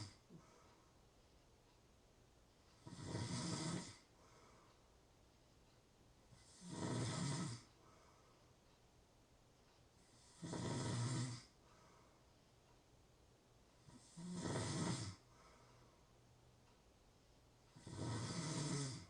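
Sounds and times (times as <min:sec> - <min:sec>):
person snoring: 0:00.0 - 0:00.4, 0:02.8 - 0:04.1, 0:06.4 - 0:07.7, 0:10.1 - 0:11.5, 0:13.9 - 0:15.2, 0:17.7 - 0:19.0.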